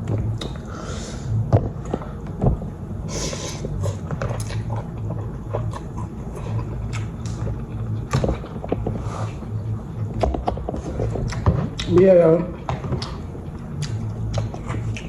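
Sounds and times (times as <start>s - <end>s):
muffled bass music through wall: 0.0s - 15.0s
chewing and slurping noodles: 1.8s - 11.9s.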